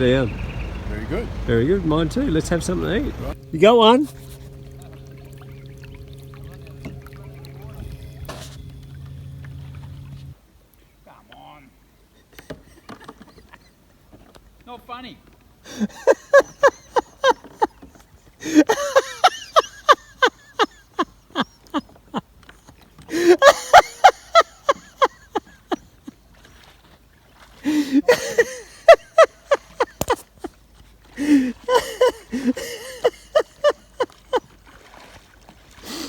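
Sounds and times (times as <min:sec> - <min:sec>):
hearty uncontrolled laughter: 0:00.8 - 0:03.4, 0:12.2 - 0:13.9, 0:15.7 - 0:26.3, 0:27.6 - 0:34.6.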